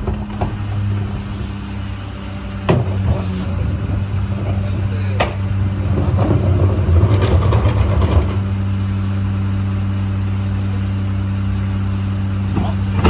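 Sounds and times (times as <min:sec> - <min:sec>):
clanks and rattles: 0:00.0 - 0:08.7
truck engine running: 0:00.0 - 0:13.0.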